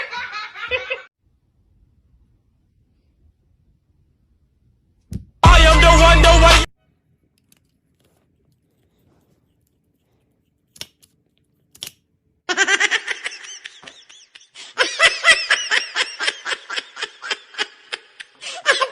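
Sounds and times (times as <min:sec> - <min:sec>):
person laughing high-pitched: 0:12.5 - 0:18.9.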